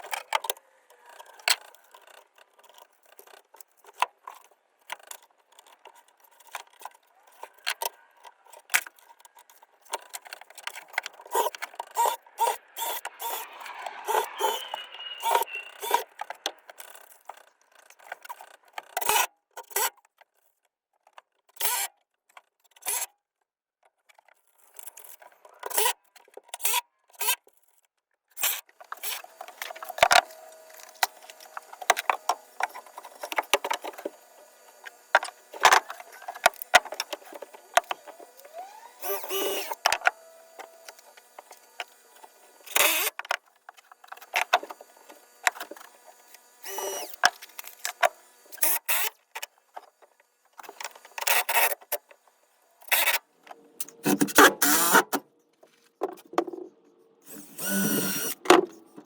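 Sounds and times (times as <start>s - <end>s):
knocks clicks and scrapes: 52.9s - 59.0s.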